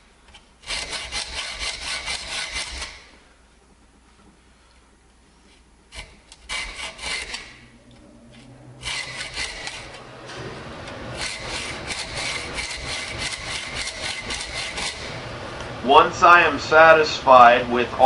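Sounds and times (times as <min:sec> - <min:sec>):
hacksaw cutting steel: 0:00.6 - 0:03.1, 0:05.9 - 0:07.7, 0:08.8 - 0:10.0, 0:11.1 - 0:15.2.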